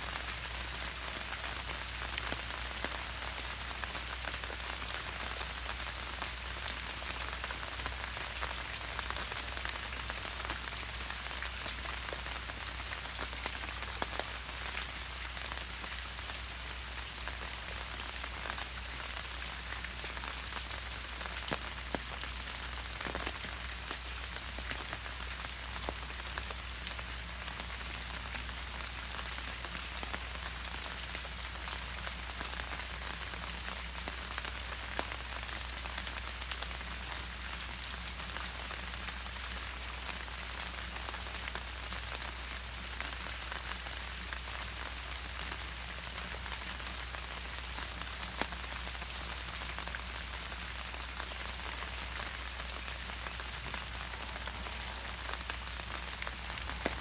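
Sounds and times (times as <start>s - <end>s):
rain falling: 0.0s - 57.0s
raindrops ticking: 50.6s - 57.0s.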